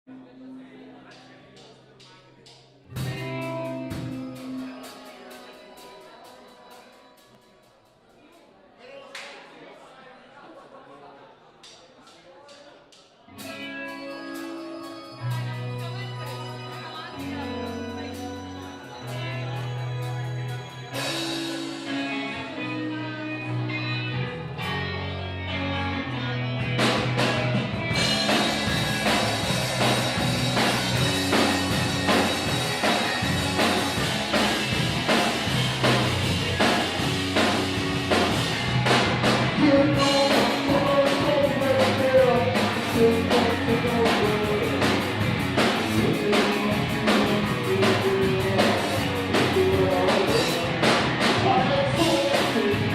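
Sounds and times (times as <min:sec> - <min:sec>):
drum kit and full band: 0:01.1 - 0:08.0, 0:12.5 - 0:52.9
bass and guitar notes: 0:02.6 - 0:06.9, 0:13.3 - 0:52.9
person singing: 0:39.4 - 0:52.9.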